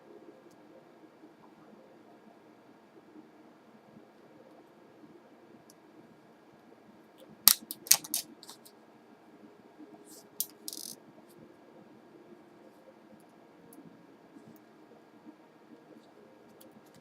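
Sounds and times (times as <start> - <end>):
laptop parts clicking: 7.5 - 8.7, 10.1 - 11.0.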